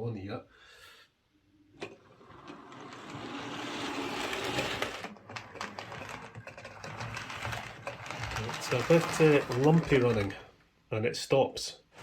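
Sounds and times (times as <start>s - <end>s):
wheel and track clicks: 1.8s - 10.5s.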